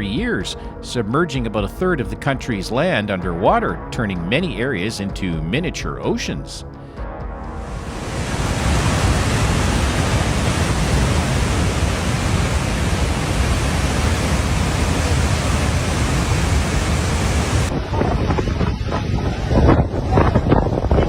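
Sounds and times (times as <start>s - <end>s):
floodwater rushing: 7.6s - 20.3s.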